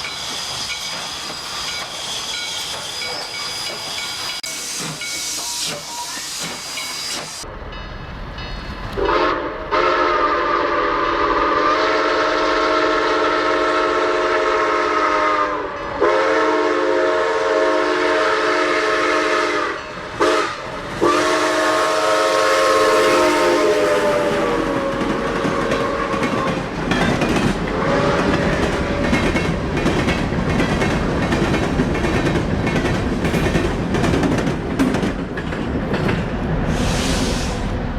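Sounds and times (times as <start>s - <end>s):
steam locomotive chime whistle: 0.0s - 7.4s, 8.8s - 29.5s
train rumble: 0.0s - 37.9s
wheels clacking over rail joints: 24.3s - 36.4s.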